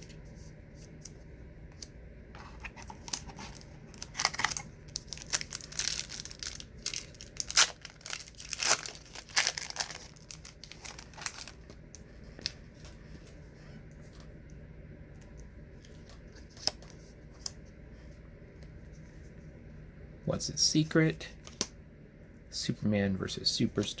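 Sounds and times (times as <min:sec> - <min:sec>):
wrapper tearing and crinkling: 0:02.8 - 0:11.6.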